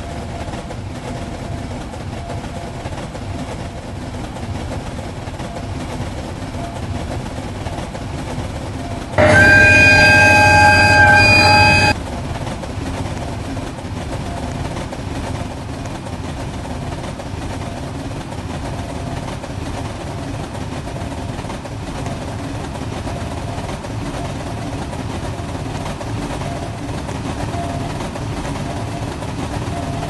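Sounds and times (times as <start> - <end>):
train horn chord: 9.2 - 12.0
train rumbling past: 9.2 - 12.0.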